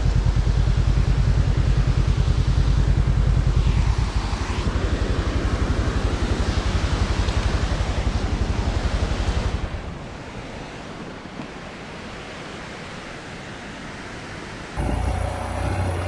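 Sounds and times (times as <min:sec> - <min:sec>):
motorcycle engine running: 0:00.0 - 0:04.0, 0:14.8 - 0:16.0.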